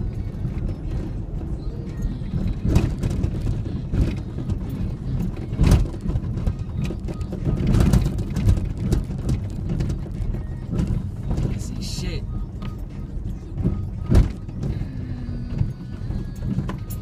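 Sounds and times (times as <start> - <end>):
truck rumbling off-road: 0.0 - 17.0
knocks and rattles: 0.2 - 11.9.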